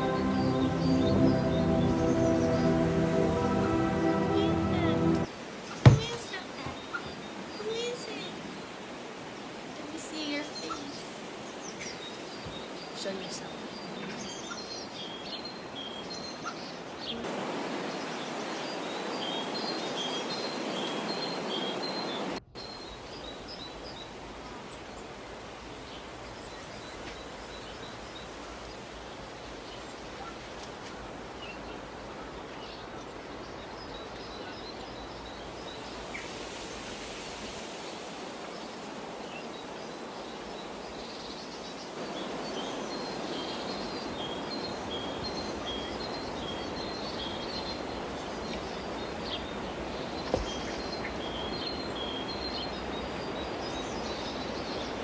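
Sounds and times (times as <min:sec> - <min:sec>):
steady background rush: 0:00.0 - 0:05.3
small birds chirping: 0:00.0 - 0:08.6, 0:09.8 - 0:36.7, 0:37.6 - 0:55.0.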